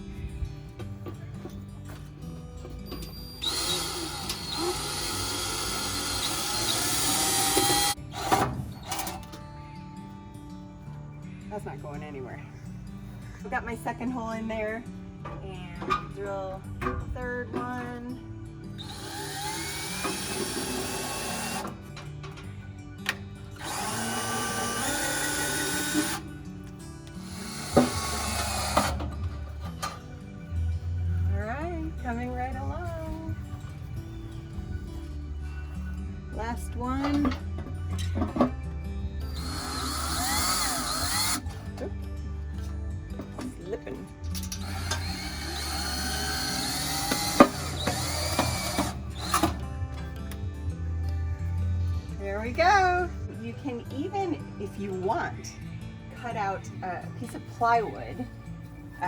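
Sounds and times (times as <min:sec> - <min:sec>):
power drill running: 0:03.1 - 0:09.2, 0:18.8 - 0:21.9, 0:23.5 - 0:26.4, 0:27.2 - 0:30.0, 0:39.2 - 0:41.6, 0:44.5 - 0:49.6.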